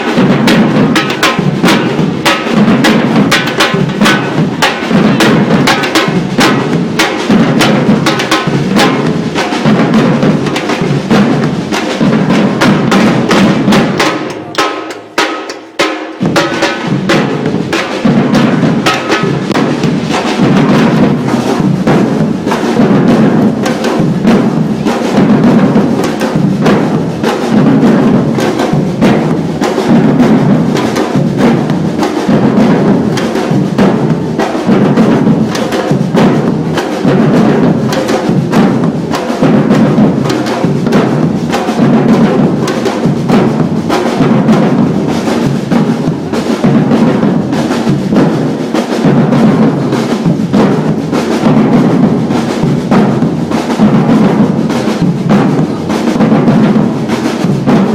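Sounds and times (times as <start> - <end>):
deep drums pulsing: 0.0 - 57.9
fast strokes on higher drums: 0.0 - 57.9
clicky percussion: 14.0 - 16.6.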